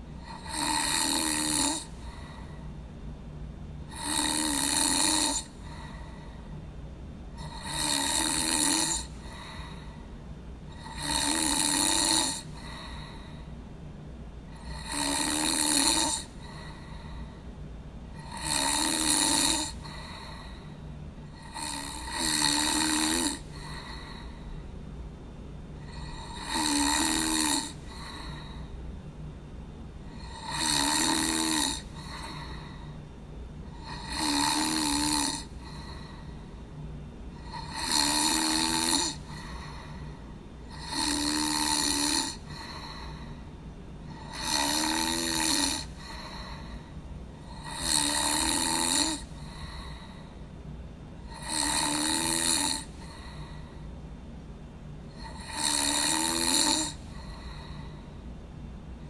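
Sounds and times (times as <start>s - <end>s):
person snoring: 0.0s - 2.6s, 3.9s - 6.4s, 7.3s - 10.1s, 10.7s - 13.5s, 14.5s - 17.4s, 18.2s - 24.6s, 25.8s - 28.7s, 30.1s - 33.0s, 33.6s - 36.6s, 37.3s - 43.4s, 44.1s - 50.3s, 51.2s - 53.8s, 55.1s - 58.0s
steady low hum: 0.0s - 59.0s.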